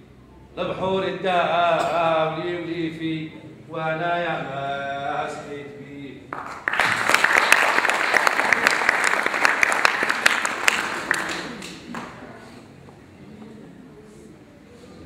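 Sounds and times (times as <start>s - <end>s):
audience applause: 6.4s - 12.3s.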